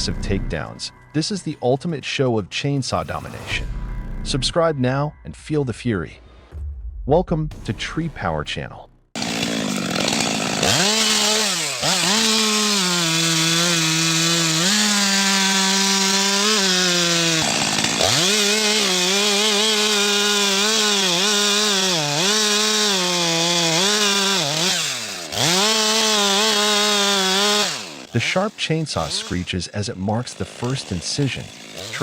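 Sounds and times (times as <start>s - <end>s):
chainsaw cutting wood: 9.2s - 32.0s.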